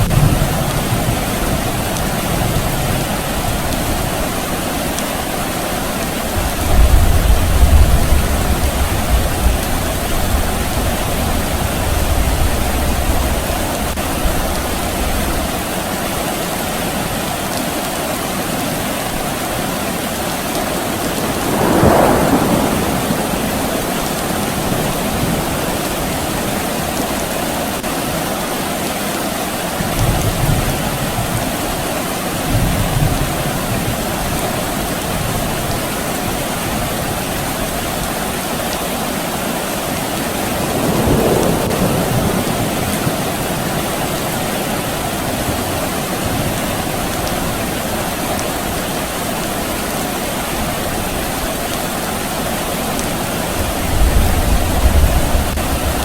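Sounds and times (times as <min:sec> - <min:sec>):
distant thunder rumbling: 0:00.0 - 0:15.6, 0:19.0 - 0:27.8, 0:39.8 - 0:48.8, 0:49.7 - 0:56.0
steady rain falling: 0:00.0 - 0:56.0.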